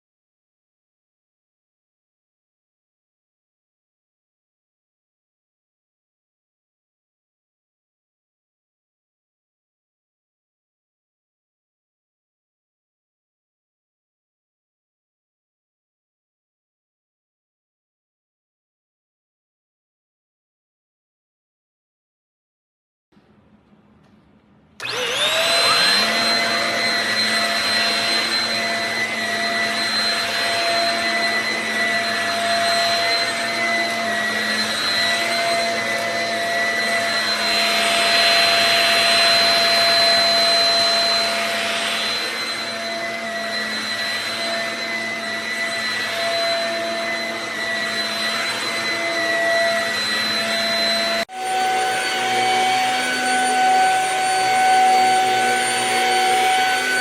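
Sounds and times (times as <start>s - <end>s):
steady motor tone: 24.8s - 57.0s
stick vacuum whining: 24.8s - 57.0s.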